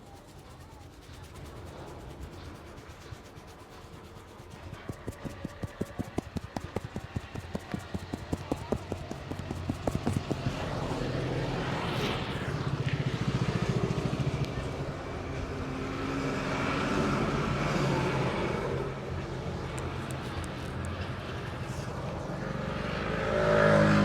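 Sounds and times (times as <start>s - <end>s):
steady traffic hum: 0.0s - 24.0s
quick hand taps: 4.6s - 11.1s.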